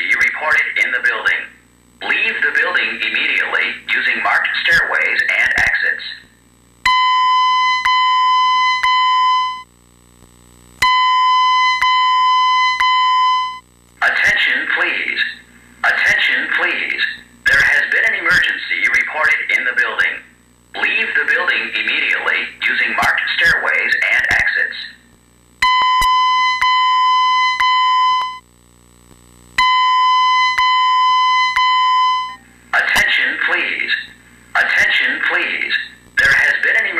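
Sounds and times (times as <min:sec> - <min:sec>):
recorded voice message: 0:00.0 - 0:06.4, 0:14.0 - 0:25.1, 0:32.7 - 0:36.9
pulsed electronic alarm tone: 0:06.9 - 0:09.7, 0:10.8 - 0:13.6, 0:25.6 - 0:28.4, 0:29.6 - 0:32.4.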